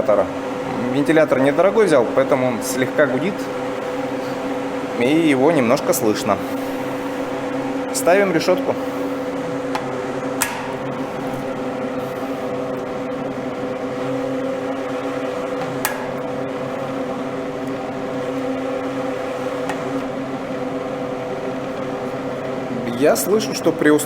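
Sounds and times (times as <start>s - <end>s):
duct fan motor hum: 0.0s - 24.0s
sharp click: 10.4s - 10.8s, 15.8s - 16.2s.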